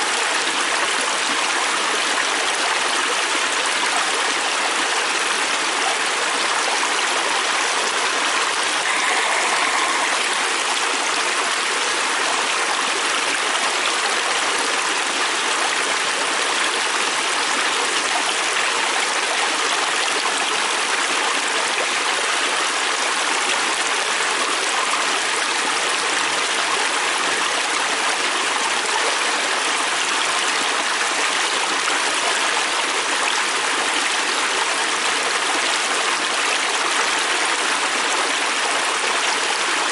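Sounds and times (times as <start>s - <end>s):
river rushing over its bed: 4.3s - 19.2s.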